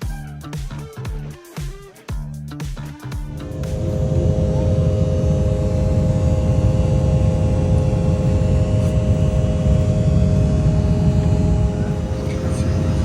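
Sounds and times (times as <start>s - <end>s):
steady hum: 3.2s - 13.0s
airliner cabin rumble: 3.4s - 13.0s.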